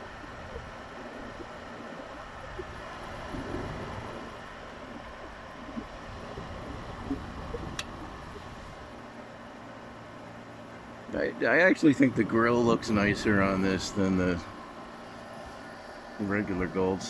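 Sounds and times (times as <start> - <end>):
light dry fan noise: 0.0 - 17.0
window air conditioner humming: 0.0 - 17.0
faint tick: 7.7 - 7.9.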